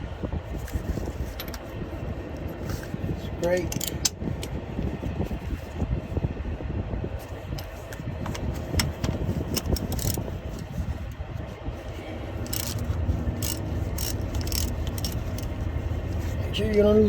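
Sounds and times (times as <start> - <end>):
hand tools clicking and scraping: 2.4 - 4.6, 7.5 - 11.2, 12.4 - 16.9.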